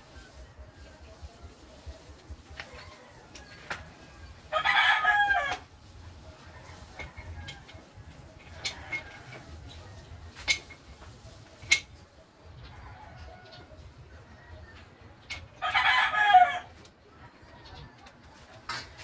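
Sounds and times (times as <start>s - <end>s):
rooster crowing: 2.6s - 5.7s, 15.6s - 16.8s.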